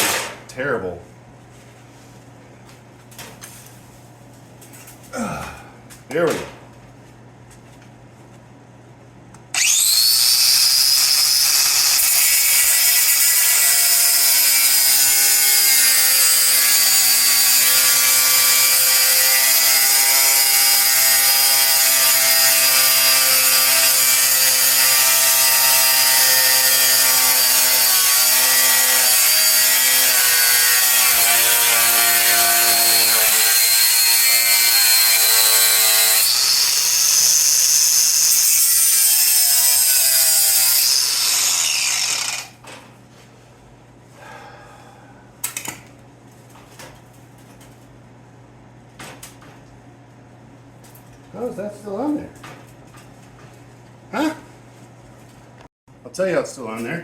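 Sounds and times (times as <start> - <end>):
grinder cutting sheet metal: 9.6 - 42.6.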